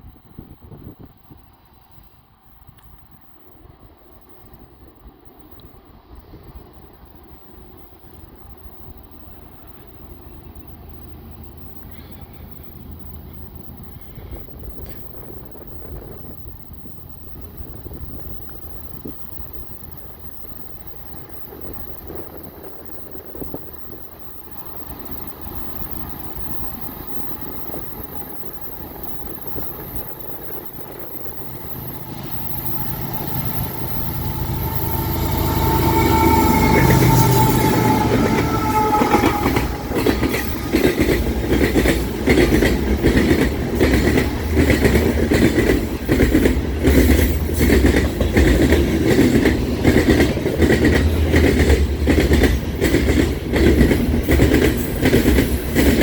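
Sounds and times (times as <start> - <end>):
train rumbling: 0.0 - 56.0
wheels clacking over rail joints: 16.6 - 56.0
locomotive horn: 33.2 - 40.9.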